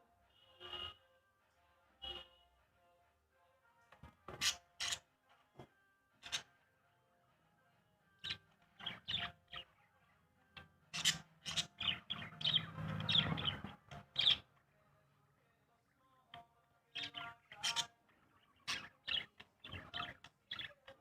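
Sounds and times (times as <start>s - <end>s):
small birds chirping: 4.3s - 5.1s, 6.2s - 6.6s, 8.2s - 14.8s, 16.3s - 21.0s.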